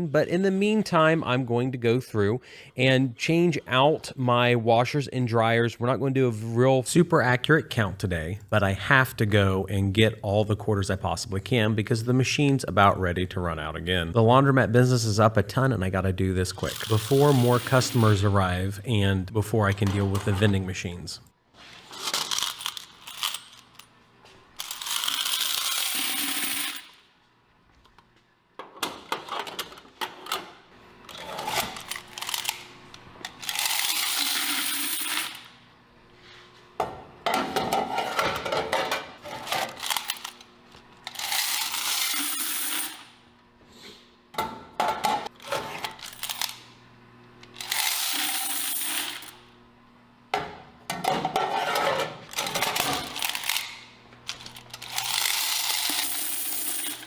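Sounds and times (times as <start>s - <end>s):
coins clattering out: 16.6s - 18.3s, 21.8s - 23.8s, 24.6s - 27.0s, 33.4s - 35.5s, 39.6s - 40.4s, 41.1s - 43.1s, 46.0s - 46.6s, 47.6s - 49.4s, 52.4s - 57.0s.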